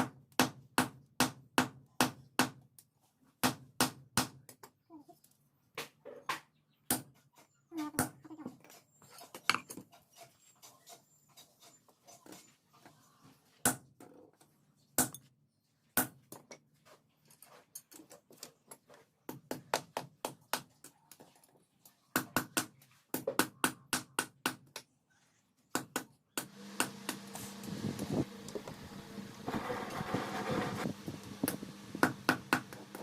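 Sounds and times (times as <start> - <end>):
motor humming: 26.5 - 33.0.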